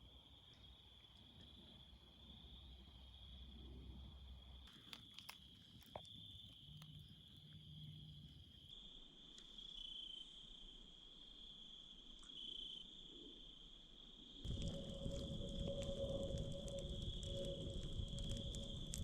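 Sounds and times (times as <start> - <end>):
crickets chirring: 0.0 - 19.0
faint clicks: 14.5 - 19.0.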